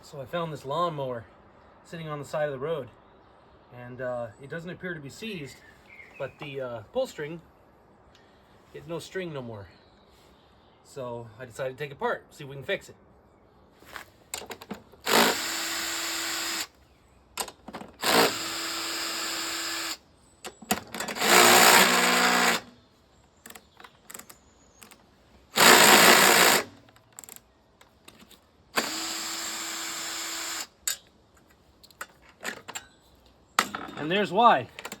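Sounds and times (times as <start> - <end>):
small clicks and handling rattles: 13.9 - 14.9, 23.4 - 25.1, 26.7 - 28.4, 30.8 - 34.1, 34.7 - 35.0
power drill running: 15.0 - 16.7, 18.0 - 20.0, 21.0 - 22.7, 25.6 - 27.4, 28.8 - 30.8.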